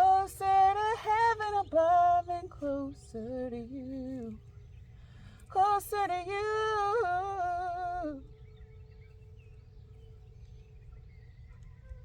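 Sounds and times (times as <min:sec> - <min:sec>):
faint steady tone: 0:00.0 - 0:12.0
woman singing long wordless note: 0:05.5 - 0:08.5.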